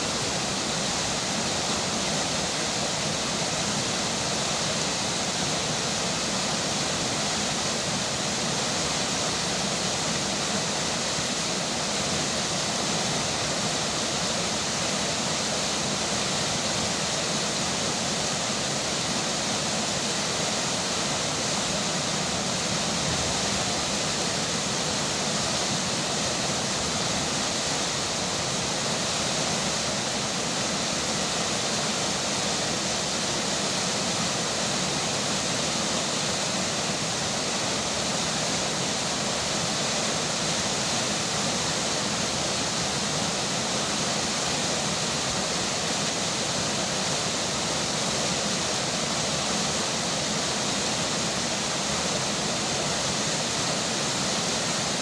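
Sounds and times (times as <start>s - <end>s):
flowing river water: 0.0s - 55.0s.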